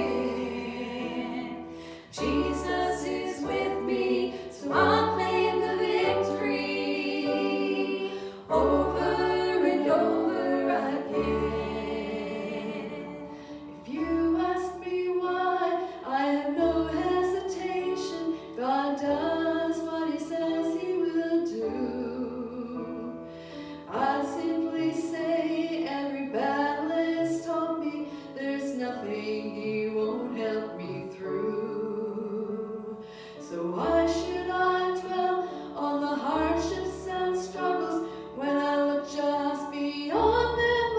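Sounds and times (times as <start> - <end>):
voices singing: 0.0 - 18.2.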